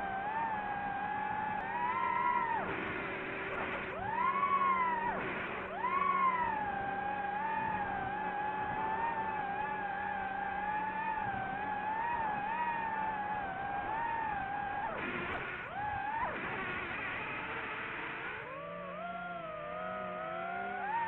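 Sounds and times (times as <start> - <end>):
drone motors whining: 0.0 - 21.0.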